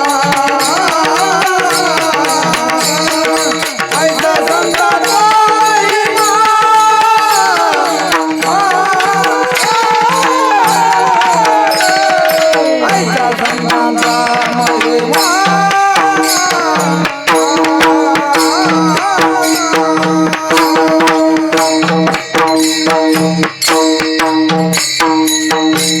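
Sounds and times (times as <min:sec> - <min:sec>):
person singing: 0:00.0 - 0:22.6
hand drum beat: 0:00.0 - 0:26.0.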